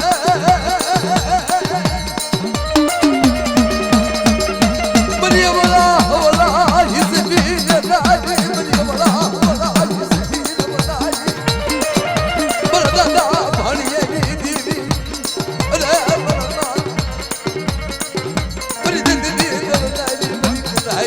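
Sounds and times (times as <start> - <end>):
fast high percussion ticking: 0.0 - 21.0
steady drum beat: 0.0 - 21.0
wavering melody instrument: 2.6 - 6.7.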